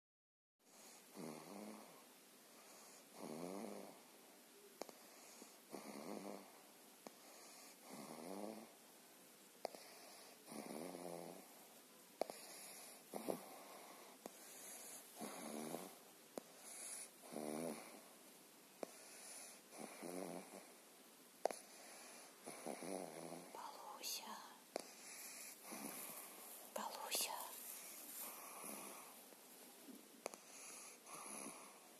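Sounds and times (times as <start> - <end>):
dog snoring: 0.7 - 4.0, 4.8 - 8.8, 9.6 - 11.6, 12.2 - 18.1, 18.8 - 20.8, 21.4 - 29.2, 30.2 - 31.9.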